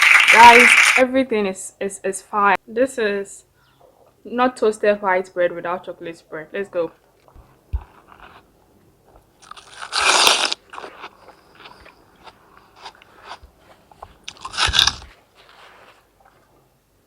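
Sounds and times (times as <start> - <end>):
chewing: 7.1 - 15.1
crunchy bites into sandwich: 9.4 - 15.1.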